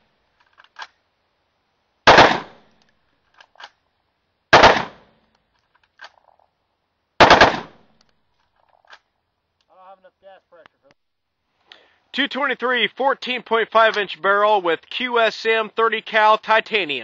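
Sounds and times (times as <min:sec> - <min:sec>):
rifle firing bursts: 0:02.1 - 0:02.6, 0:04.5 - 0:05.0, 0:07.2 - 0:07.8.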